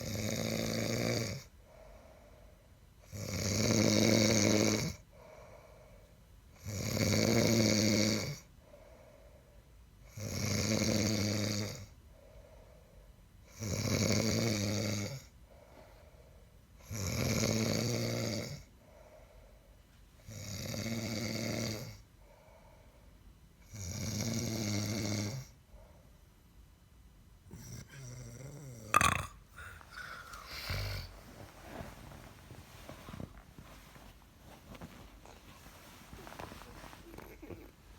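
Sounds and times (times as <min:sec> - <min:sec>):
loud snoring: 0:00.0 - 0:01.5, 0:03.1 - 0:05.0, 0:06.6 - 0:08.4, 0:10.1 - 0:11.9, 0:13.5 - 0:15.3, 0:16.8 - 0:18.7, 0:20.3 - 0:22.0, 0:23.7 - 0:25.5, 0:27.5 - 0:31.8
faint breathing: 0:01.6 - 0:02.8, 0:05.1 - 0:06.2, 0:08.6 - 0:09.7, 0:12.0 - 0:13.2, 0:15.4 - 0:16.6, 0:18.8 - 0:19.9, 0:22.2 - 0:23.3, 0:25.6 - 0:26.3, 0:29.4 - 0:37.9.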